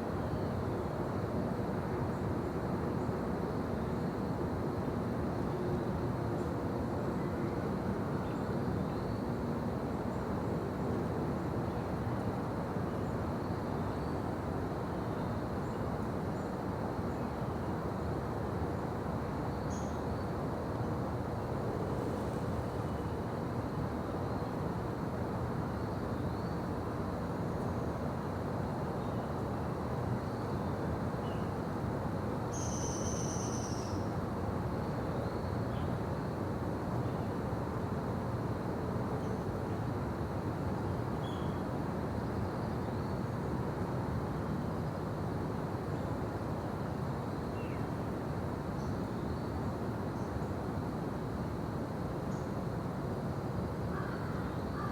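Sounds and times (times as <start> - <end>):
low rumble of background noise: 0.0 - 54.9
faint bird chirps: 32.5 - 34.1, 41.2 - 41.6.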